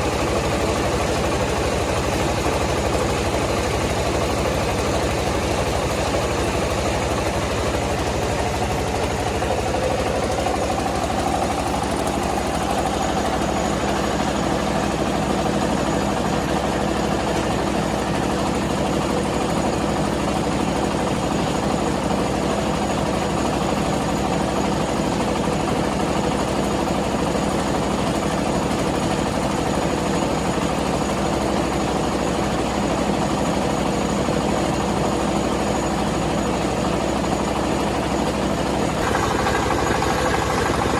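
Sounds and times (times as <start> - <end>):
rice milling machine droning: 0.0 - 40.9.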